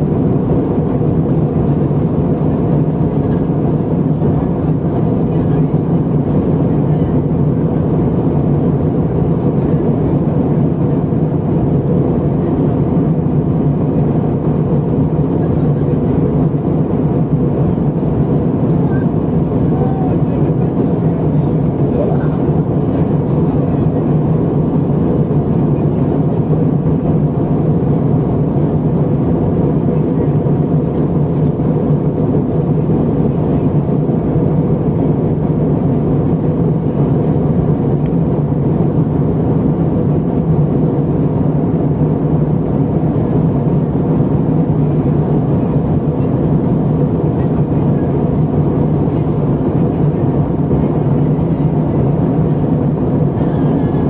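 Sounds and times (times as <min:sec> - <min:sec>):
jet engine and airflow rush: 0:00.0 - 0:54.0.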